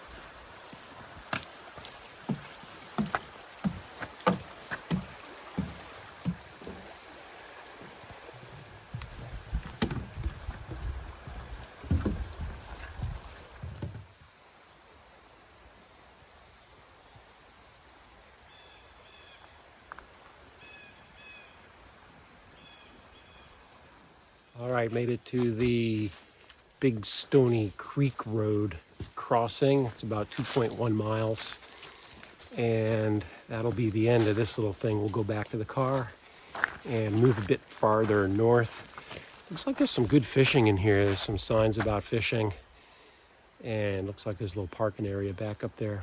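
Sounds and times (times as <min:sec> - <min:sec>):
footsteps on a trail: 0:00.0 - 0:14.2, 0:24.7 - 0:26.8, 0:27.4 - 0:42.0
insect drone with chirps: 0:01.8 - 0:46.0
low thumps and rumble: 0:08.9 - 0:14.0.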